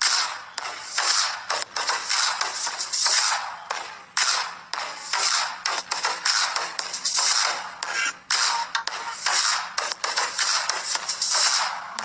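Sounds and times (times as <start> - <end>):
electronic dance music: 0.0 - 12.0.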